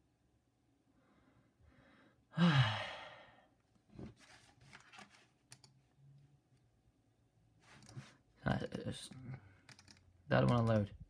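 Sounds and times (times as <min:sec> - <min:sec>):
man sighing heavily: 0:02.3 - 0:03.5.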